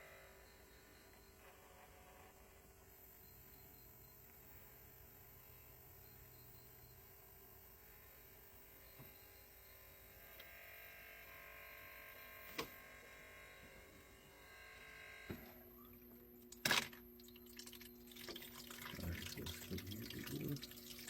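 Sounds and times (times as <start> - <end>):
low steady hum: 13.0 - 21.0
faint running water: 15.3 - 21.0.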